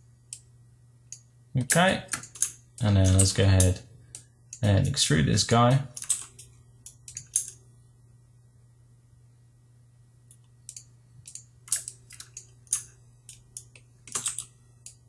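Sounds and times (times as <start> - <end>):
faint low hum: 0.0 - 15.0
keyboard and mouse clicks: 1.7 - 4.7, 6.0 - 7.6, 10.3 - 15.0.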